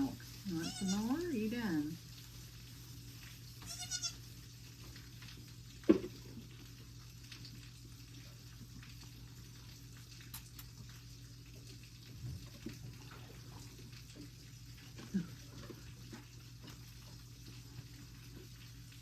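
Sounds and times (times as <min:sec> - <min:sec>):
goat kid sucking from bottle: 0:00.4 - 0:01.1, 0:03.2 - 0:04.3.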